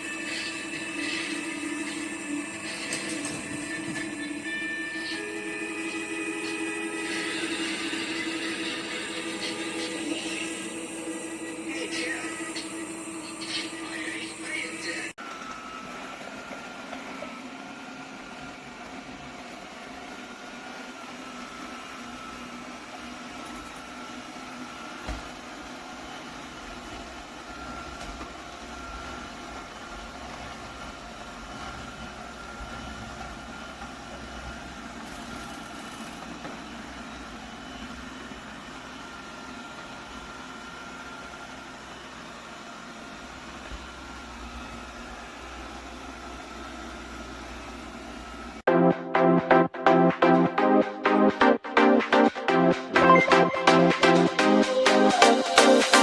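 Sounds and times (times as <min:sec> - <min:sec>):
robot vacuum whining: 0:00.0 - 0:56.0.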